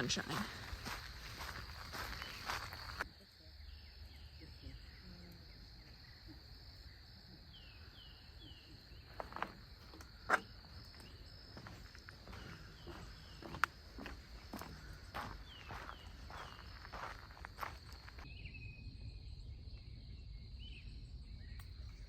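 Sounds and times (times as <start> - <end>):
footsteps clicking on trail: 0.0 - 3.0, 9.1 - 18.3
insect drone: 0.0 - 22.0.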